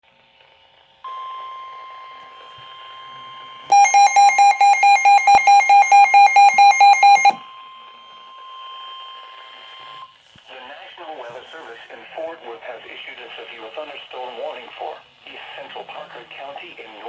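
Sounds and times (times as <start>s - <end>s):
rapid electronic beeping: 3.7s - 7.4s
steady warning tone: 3.7s - 7.4s
faint radio hiss: 10.2s - 17.0s.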